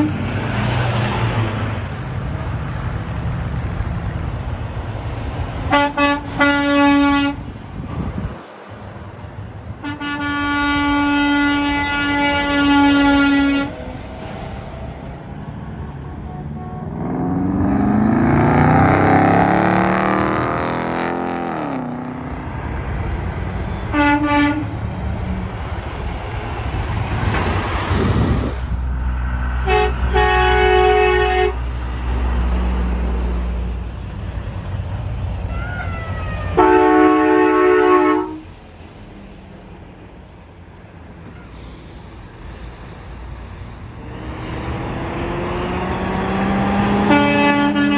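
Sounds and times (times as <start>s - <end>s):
truck horn honks: 0.0s - 0.5s, 5.6s - 8.1s, 9.7s - 14.0s, 15.9s - 20.6s, 23.6s - 24.8s, 29.6s - 31.7s, 35.5s - 38.6s, 46.0s - 47.9s
vehicles passing by: 0.0s - 47.9s.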